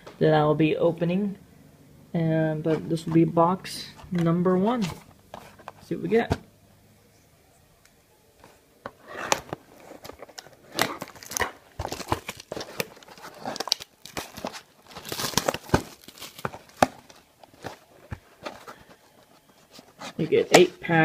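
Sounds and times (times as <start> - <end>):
packaging being torn open: 9.2 - 17.7.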